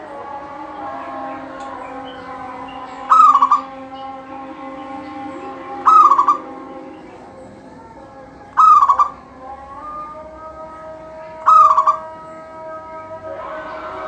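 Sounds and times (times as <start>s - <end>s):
dove cooing: 1.4s - 3.9s, 4.6s - 10.2s, 11.3s - 12.5s.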